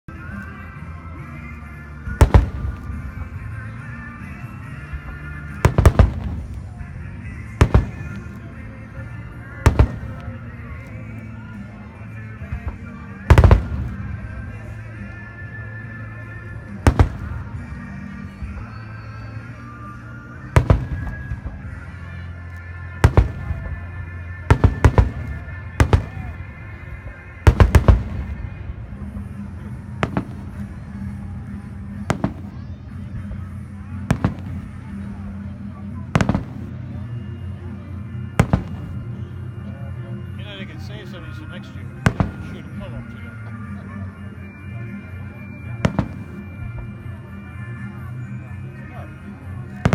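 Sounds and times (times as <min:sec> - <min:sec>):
background music: 0:00.0 - 0:49.9
fireworks bangs: 0:02.1 - 0:03.6, 0:05.4 - 0:08.6, 0:09.6 - 0:10.9, 0:12.5 - 0:14.9, 0:16.7 - 0:19.5, 0:20.4 - 0:22.0, 0:23.0 - 0:37.0, 0:38.4 - 0:39.2, 0:40.8 - 0:43.3, 0:45.6 - 0:46.9.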